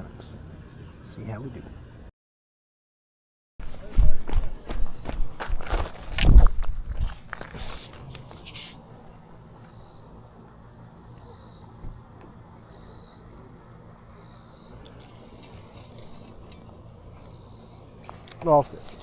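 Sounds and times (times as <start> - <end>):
rustling and handling noise: 5.0 - 8.9.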